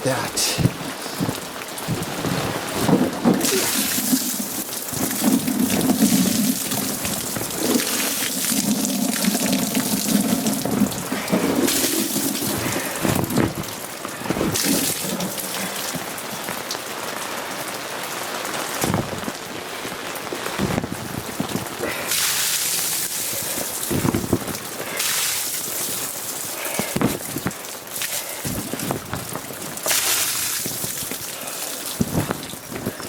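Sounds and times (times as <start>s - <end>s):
rain falling: 0.0s - 33.0s.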